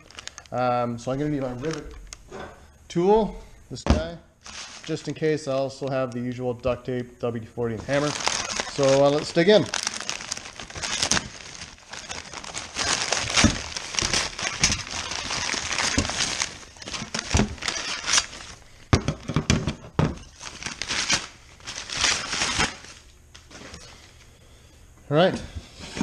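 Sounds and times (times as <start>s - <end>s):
packaging crinkling and rustling: 0.0s - 2.2s, 4.4s - 5.2s, 7.7s - 18.7s, 20.2s - 23.8s.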